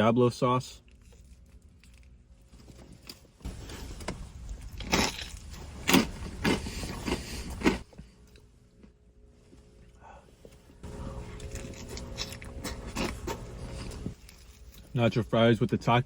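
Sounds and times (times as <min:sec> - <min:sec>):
crunchy chewing of chips: 0:00.8 - 0:08.5, 0:10.8 - 0:15.1.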